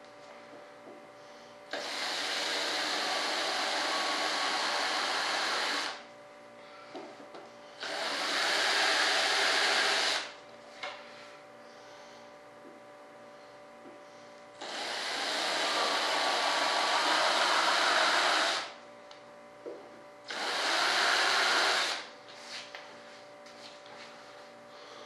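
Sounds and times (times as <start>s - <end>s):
power tool running: 1.7s - 6.0s, 7.8s - 10.4s, 14.6s - 18.8s, 20.2s - 22.1s.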